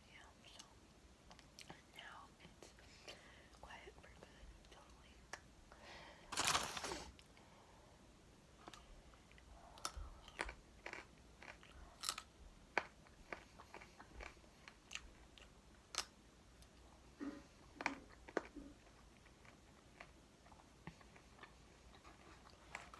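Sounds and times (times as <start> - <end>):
person chewing crispy chicken: 9.8 - 15.5.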